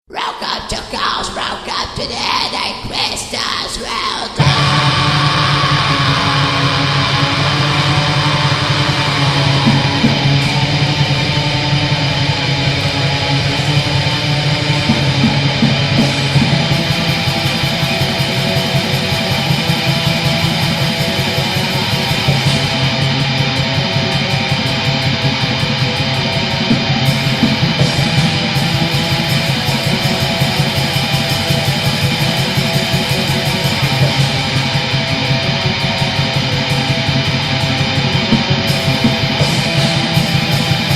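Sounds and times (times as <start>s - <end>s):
distorted electric guitars: 0.1s - 40.9s
rapid drums: 0.2s - 40.9s
bass guitar: 4.3s - 40.9s.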